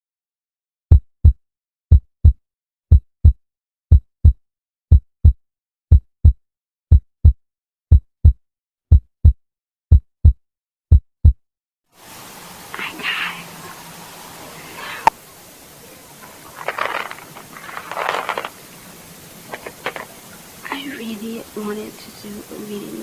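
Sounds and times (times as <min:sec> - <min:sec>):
heartbeat thumps: 0:00.9 - 0:11.4.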